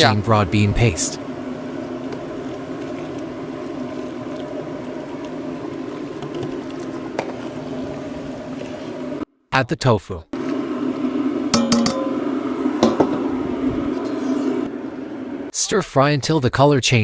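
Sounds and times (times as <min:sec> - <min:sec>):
paste frying in a wok: 0:10.4 - 0:15.5.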